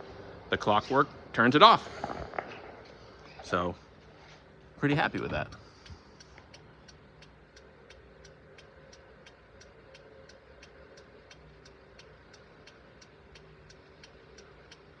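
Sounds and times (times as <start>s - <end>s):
turn signal mechanical ticking: 4.5s - 15.0s.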